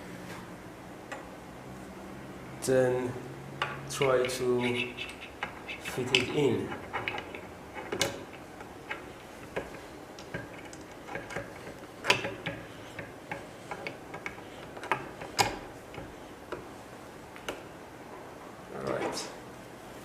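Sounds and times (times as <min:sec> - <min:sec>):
printer parts clicking and knocking: 0:05.4 - 0:16.6.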